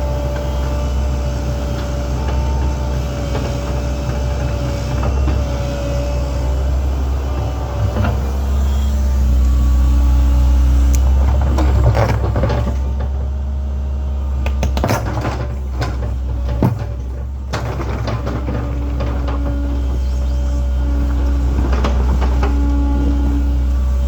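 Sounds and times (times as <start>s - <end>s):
diesel engine droning: 0.0s - 24.0s
bucket scraping and clanking: 11.2s - 13.4s, 14.7s - 23.7s.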